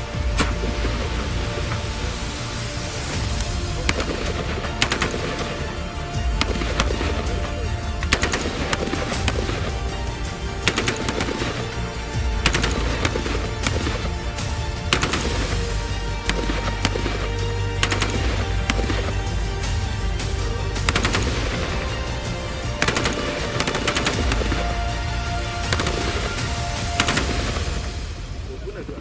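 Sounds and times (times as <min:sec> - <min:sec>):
background music with bass: 0:00.0 - 0:28.9
rifle gunshots: 0:00.0 - 0:29.0.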